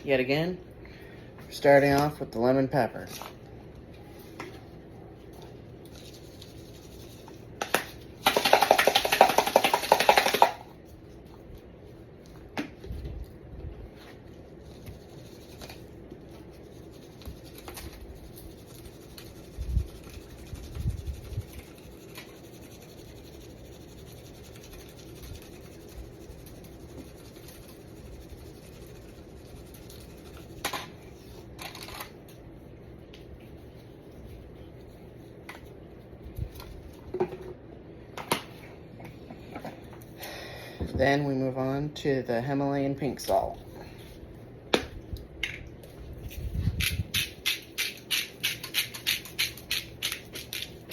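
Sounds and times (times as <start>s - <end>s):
seasoning shaker rattling: 5.8s - 10.8s, 14.6s - 32.3s, 46.2s - 50.9s.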